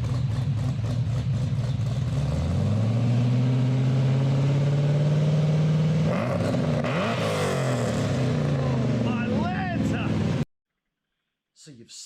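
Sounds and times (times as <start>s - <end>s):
car engine idling and revving: 0.0s - 10.4s.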